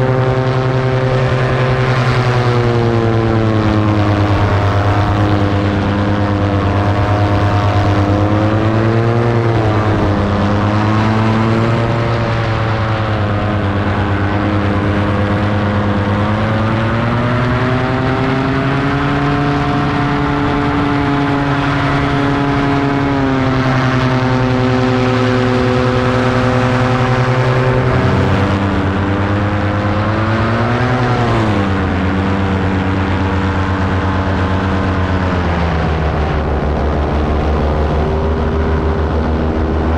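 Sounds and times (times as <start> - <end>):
paramotor engine and propeller: 0.0 - 39.9.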